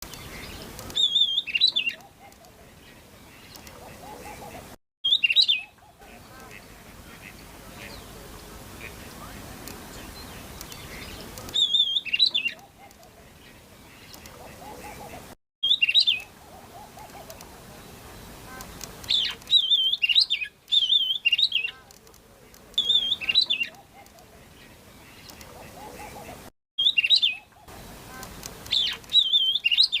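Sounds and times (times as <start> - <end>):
bird whistled song phrases: 0.9 - 2.4, 5.1 - 6.0, 10.9 - 12.7, 15.6 - 17.1, 19.1 - 21.8, 22.8 - 24.0, 26.8 - 27.6, 28.7 - 30.0.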